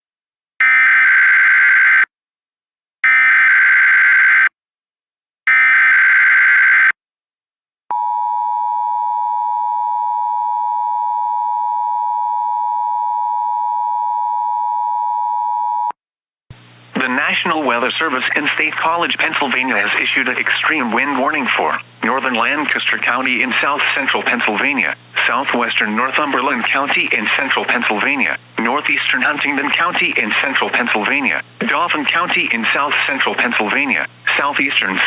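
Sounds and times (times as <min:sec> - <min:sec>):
steady attention tone: 0:07.9 - 0:15.9.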